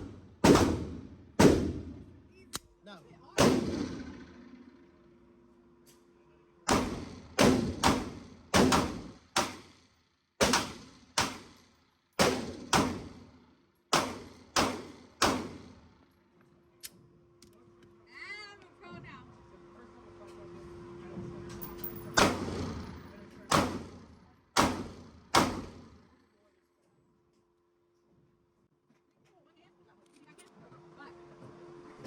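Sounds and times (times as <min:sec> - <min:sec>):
gunshots with short echo: 0:00.0 - 0:02.1, 0:03.4 - 0:04.6, 0:06.7 - 0:09.7, 0:10.4 - 0:11.6, 0:12.2 - 0:13.2, 0:13.9 - 0:15.8, 0:22.1 - 0:26.1.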